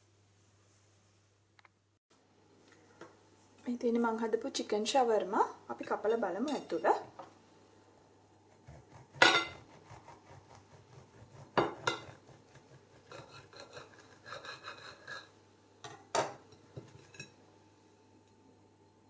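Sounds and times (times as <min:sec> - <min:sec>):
knife sawing through wrap: 0:08.6 - 0:11.6, 0:12.2 - 0:15.2
knife clinking on plate: 0:09.2 - 0:09.6, 0:11.6 - 0:12.2.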